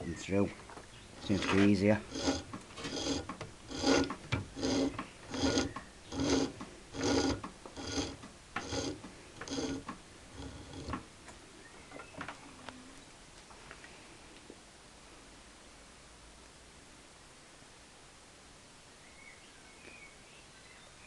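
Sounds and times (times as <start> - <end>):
wire stripper machine rasping clicks: 1.2 - 11.0.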